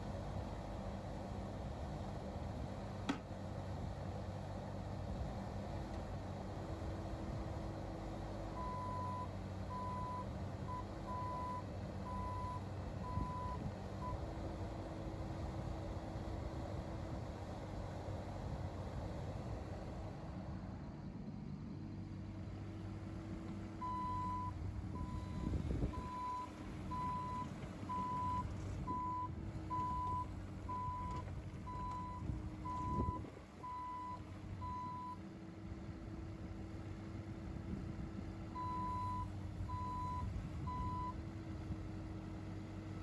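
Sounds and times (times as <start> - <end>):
diesel engine running: 0.0 - 43.0
excavator travel alarm beeping: 8.6 - 14.2, 23.8 - 35.2, 38.6 - 41.2.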